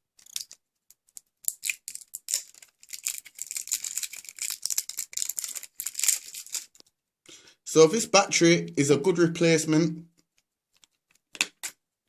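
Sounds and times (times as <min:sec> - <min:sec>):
plastic packaging crinkling: 0:00.2 - 0:06.9.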